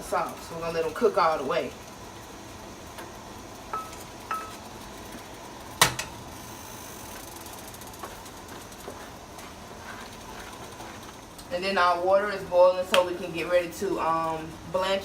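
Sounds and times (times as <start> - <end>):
utensil clinking on cookware: 3.7 - 4.6.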